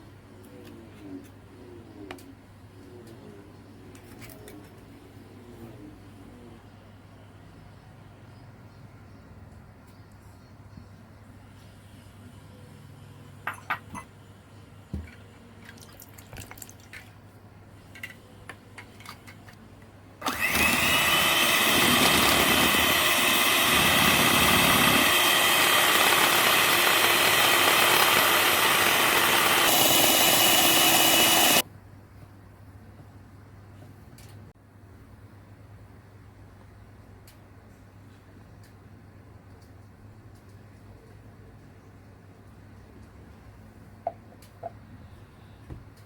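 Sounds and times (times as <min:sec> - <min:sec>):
electric mixer whining: 0:20.2 - 0:31.6.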